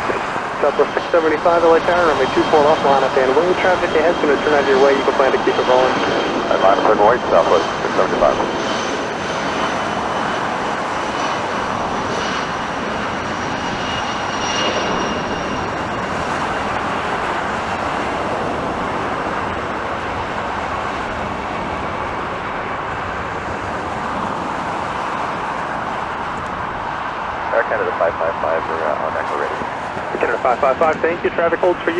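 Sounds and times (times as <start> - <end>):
jet engines roaring: 0.0 - 31.9
high whine: 27.3 - 31.9.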